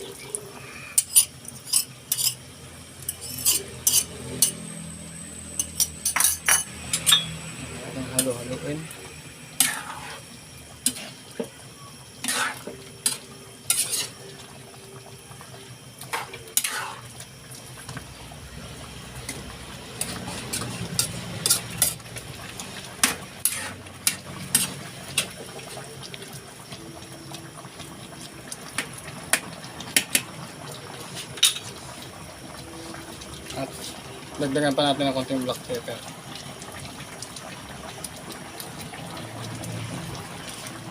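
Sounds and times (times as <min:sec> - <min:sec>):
metal utensil clinking on pot: 0:03.1 - 0:04.6, 0:05.6 - 0:07.4, 0:13.0 - 0:14.1
curry simmering and bubbling: 0:07.9 - 0:40.9.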